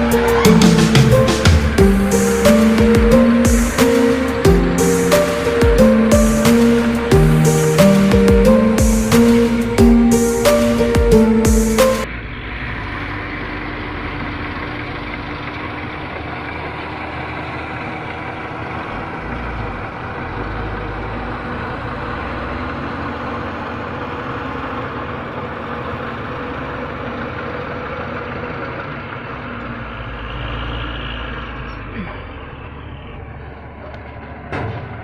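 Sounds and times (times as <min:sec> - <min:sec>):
excavator diesel engine running: 0:00.0 - 0:35.0.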